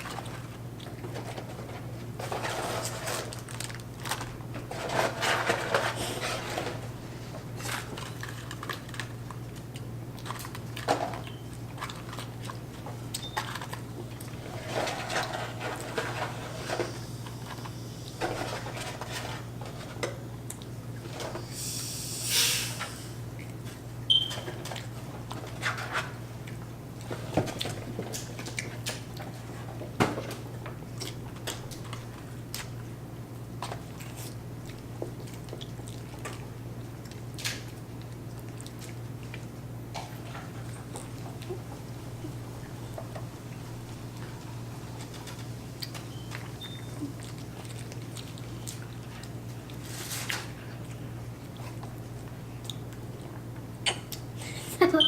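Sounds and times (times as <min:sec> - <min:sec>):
chewing and food handling clicks: 0:20.4 - 0:21.0, 0:30.6 - 0:41.9, 0:45.0 - 0:49.8, 0:50.8 - 0:54.3.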